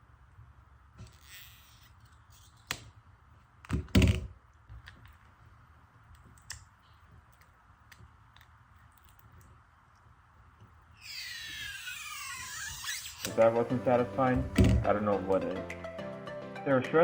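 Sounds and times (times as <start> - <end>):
squeaky adhesive stretch: 1.0 - 3.0, 10.9 - 13.5.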